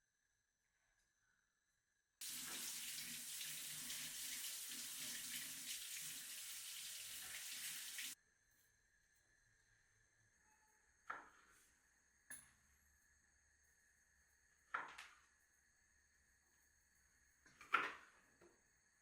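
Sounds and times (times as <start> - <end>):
tap water running into sink: 2.2 - 8.2.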